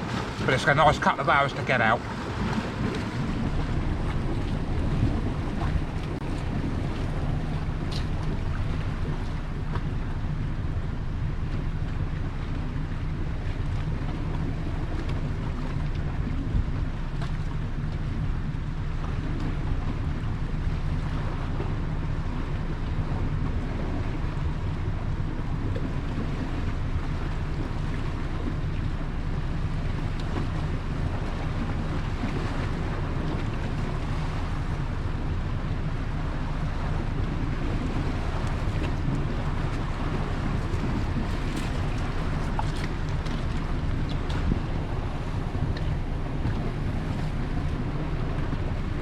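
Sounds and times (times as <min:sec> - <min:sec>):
storm wind buffeting microphone: 0:00.0 - 0:12.0, 0:36.6 - 0:49.0.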